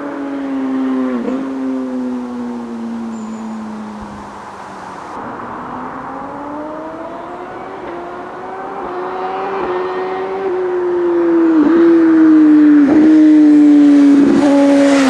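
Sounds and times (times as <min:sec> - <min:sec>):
sport motorcycle engine accelerating: 0:05.5 - 0:15.0.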